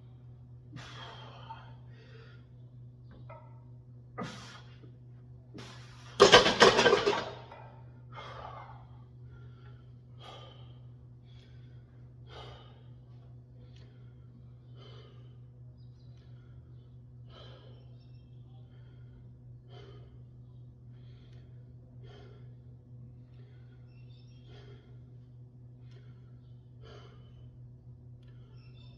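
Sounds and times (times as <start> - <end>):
steady low hum: 0.0 - 28.9
heavy breathing: 8.0 - 15.6, 16.2 - 18.0, 18.6 - 28.6.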